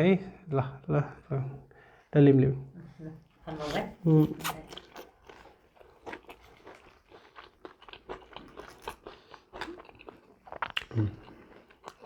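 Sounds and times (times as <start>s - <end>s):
chewing crunchy food: 3.6s - 12.0s
mouth clicks: 4.2s - 5.0s.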